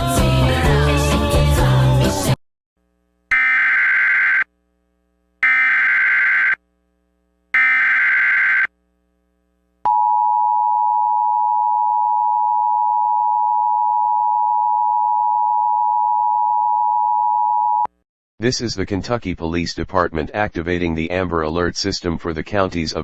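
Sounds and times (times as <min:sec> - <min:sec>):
bursts of rapid digital tones: 0:07.6 - 0:08.7.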